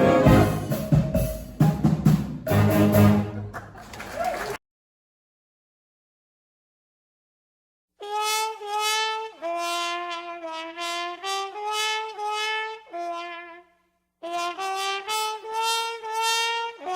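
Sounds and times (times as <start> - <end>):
brass band horns playing: 0.0 - 3.9, 8.0 - 13.6, 14.2 - 16.9.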